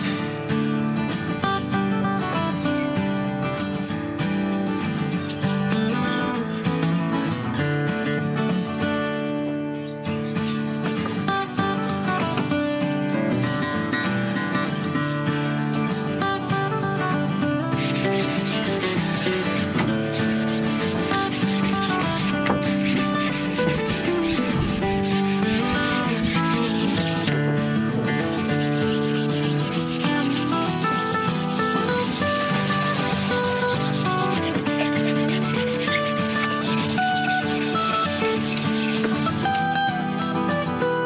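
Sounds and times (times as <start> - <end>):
wood being sanded: 17.5 - 39.8.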